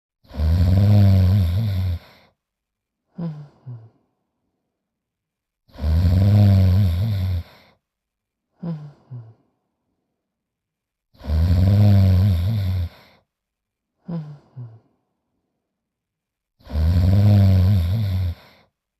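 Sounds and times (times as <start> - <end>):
cartoon dog snoring: 0.2 - 2.3, 3.1 - 4.0, 5.7 - 7.8, 8.6 - 9.4, 11.1 - 13.2, 14.0 - 14.9, 16.6 - 18.7.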